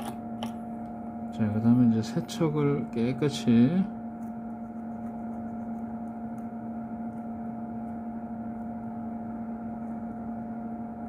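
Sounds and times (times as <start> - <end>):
electrical hum: 0.0 - 11.0.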